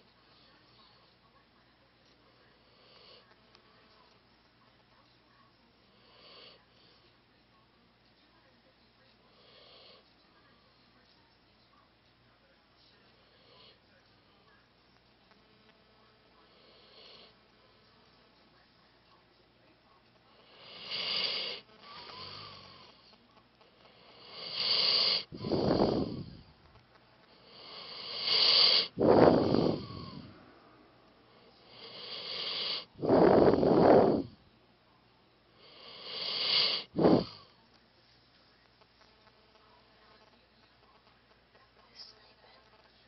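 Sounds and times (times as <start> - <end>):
dog snoring wheezy rasp: 20.4 - 23.0, 23.8 - 26.5, 27.4 - 30.3, 31.4 - 34.4, 35.6 - 37.5.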